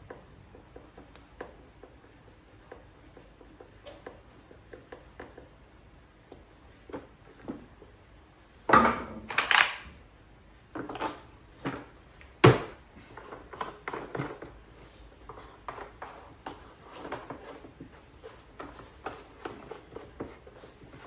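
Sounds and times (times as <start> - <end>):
plastic parts knocking and scraping: 8.7 - 9.9.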